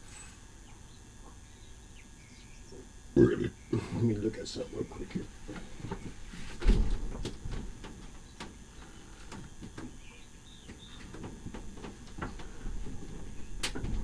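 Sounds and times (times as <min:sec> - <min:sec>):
low room rumble: 0:00.0 - 0:14.0
light clicks and knocks: 0:05.5 - 0:14.0.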